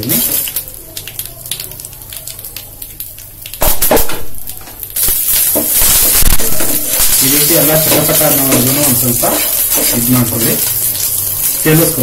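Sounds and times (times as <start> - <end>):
seeds spluttering in hot oil: 0.0 - 12.0
steady sizzle: 0.0 - 12.0.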